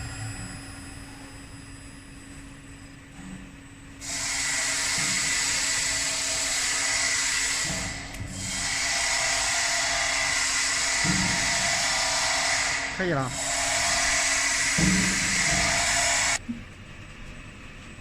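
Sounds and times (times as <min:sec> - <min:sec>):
wood lathe whining cutting: 0:04.0 - 0:16.4.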